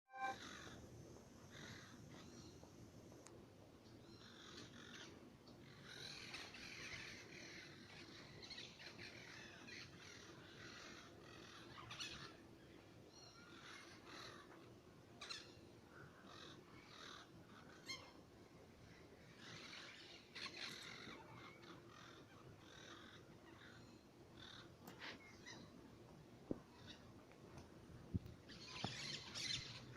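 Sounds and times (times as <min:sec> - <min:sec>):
birds chirping and whistling: 0:28.5 - 0:29.9.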